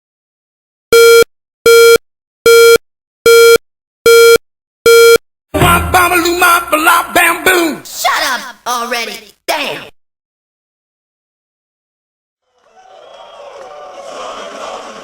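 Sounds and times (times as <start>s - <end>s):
music: 5.5s - 7.1s.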